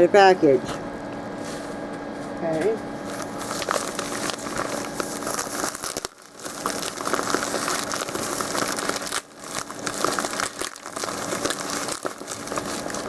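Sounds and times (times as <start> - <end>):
packaging crinkling and rustling: 3.0 - 13.0.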